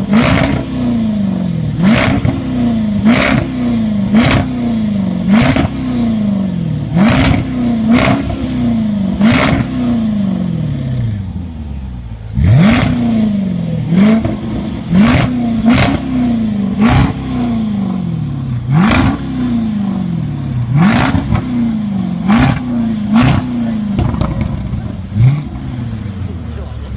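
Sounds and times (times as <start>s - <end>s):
car engine revving: 0.0s - 26.9s
exhaust crackle and pop: 23.2s - 25.1s.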